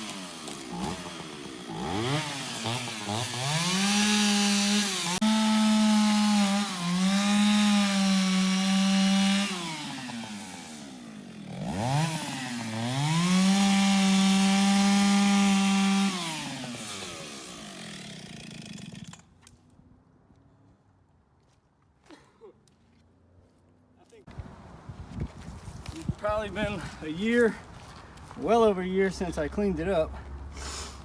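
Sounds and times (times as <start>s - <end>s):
chainsaw revving: 0.0s - 19.2s.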